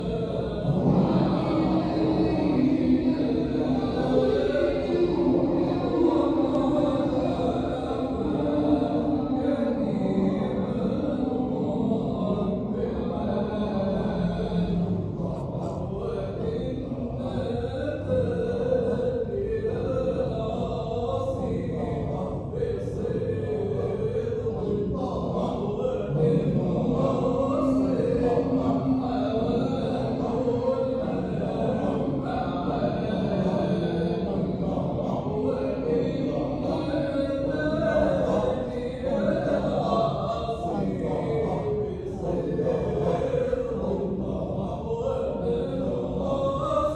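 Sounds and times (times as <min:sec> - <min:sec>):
group of voices chanting: 0:19.8 - 0:46.9.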